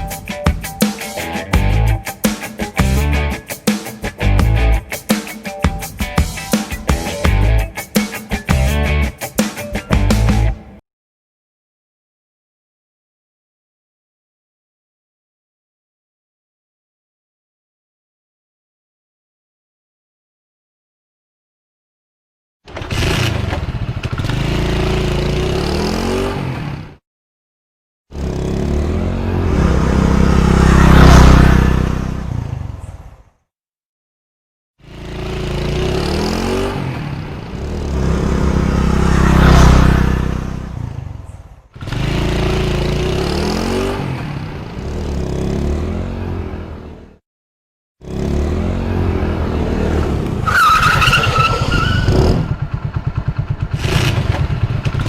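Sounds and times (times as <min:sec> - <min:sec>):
motorcycle engine running: 0:01.5 - 0:03.4, 0:22.7 - 0:26.4, 0:28.2 - 0:32.7, 0:34.8 - 0:46.8, 0:51.6 - 0:55.0
motorcycle passing by: 0:22.8 - 0:27.0, 0:28.1 - 0:33.3, 0:34.8 - 0:47.2, 0:48.0 - 0:55.0.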